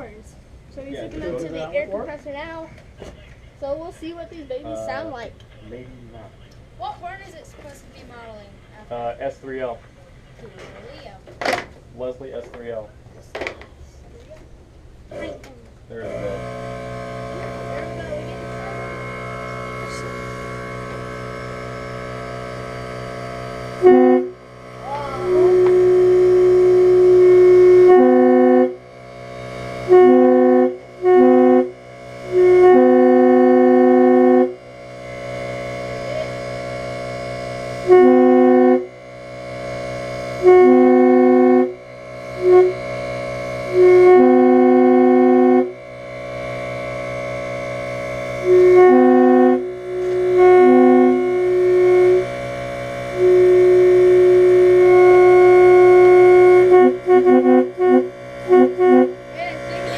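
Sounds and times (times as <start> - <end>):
air train horn blasts: 16.0 - 59.9.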